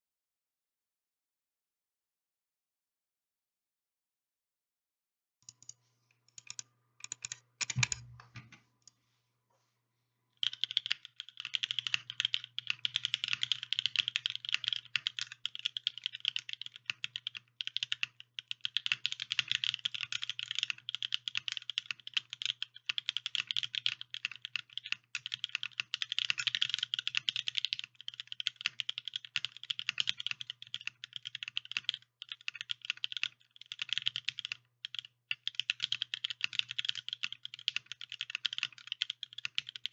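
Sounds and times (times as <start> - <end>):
mechanical keyboard typing: 6.3 - 8.5, 10.4 - 39.9.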